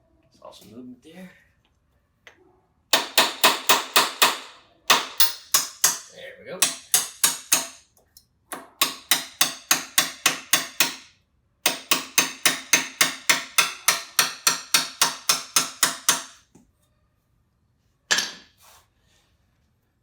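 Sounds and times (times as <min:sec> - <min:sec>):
hammer striking bolt: 0:02.9 - 0:07.8, 0:08.5 - 0:11.1, 0:11.7 - 0:16.4.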